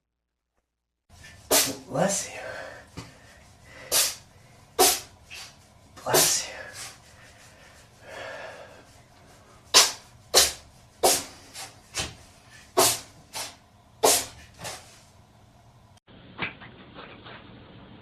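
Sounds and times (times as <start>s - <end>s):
cat sneezing: 1.4s - 1.9s, 3.8s - 4.2s, 4.8s - 6.4s, 9.7s - 11.7s, 12.8s - 14.8s.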